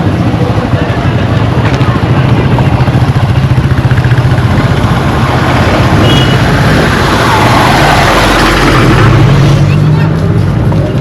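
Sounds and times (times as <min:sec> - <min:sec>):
vehicle engine humming: 0:00.0 - 0:11.0.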